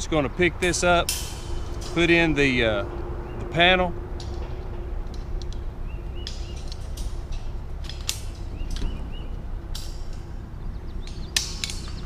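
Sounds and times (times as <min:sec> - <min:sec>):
wire panel clinking against metal: 0:00.5 - 0:12.0.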